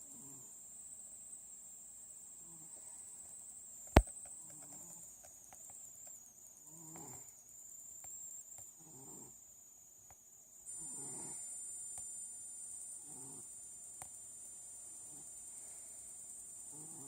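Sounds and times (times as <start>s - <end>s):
cat snoring softly: 2.4s - 3.2s, 6.6s - 7.4s, 8.8s - 9.4s, 10.7s - 11.7s, 13.0s - 13.5s, 15.0s - 16.0s, 16.7s - 17.0s.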